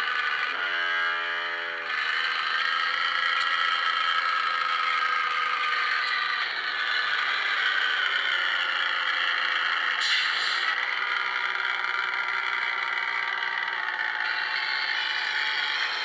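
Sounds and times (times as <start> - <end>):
multi-tone bus air horns: 0.5 - 1.9.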